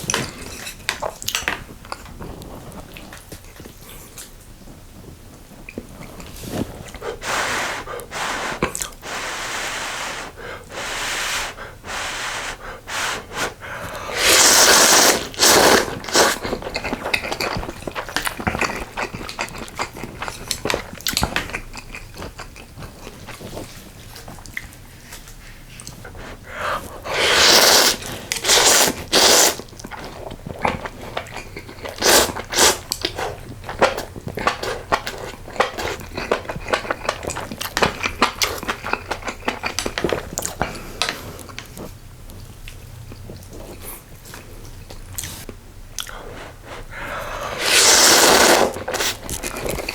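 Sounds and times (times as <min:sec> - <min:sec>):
loud noodle slurps: 0:06.5 - 0:16.8, 0:26.7 - 0:29.7, 0:31.8 - 0:33.4, 0:47.4 - 0:49.9
chewing: 0:13.8 - 0:49.9.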